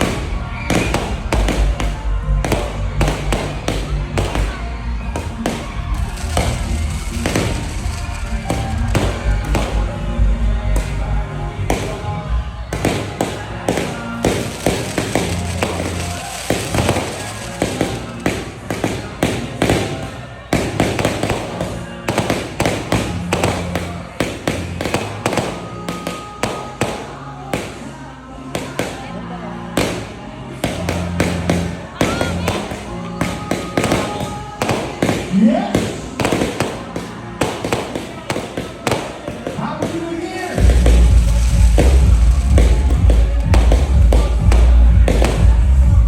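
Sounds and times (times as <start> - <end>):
music with heavy bass: 0.0 - 18.8, 40.5 - 46.0
fireworks bursting with bangs: 0.0 - 46.0.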